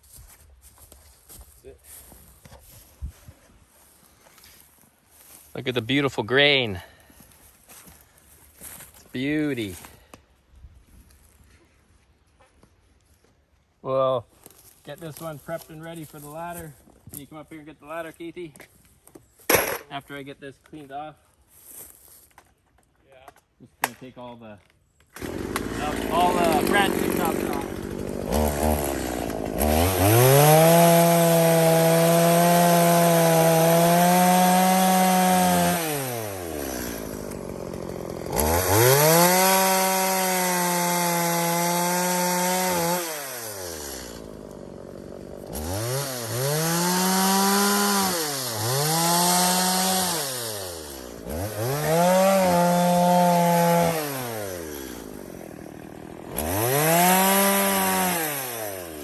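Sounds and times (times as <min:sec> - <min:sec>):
chainsaw cutting log: 0:19.4 - 0:19.9, 0:25.1 - 0:59.0.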